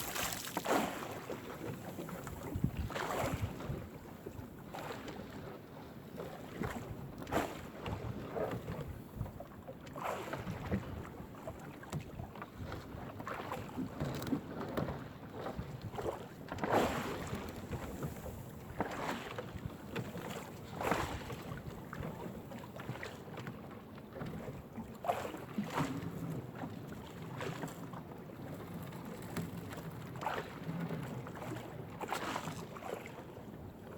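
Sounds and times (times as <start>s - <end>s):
water splashes: 0.0s - 3.9s
wind buffeting microphone: 2.2s - 4.0s.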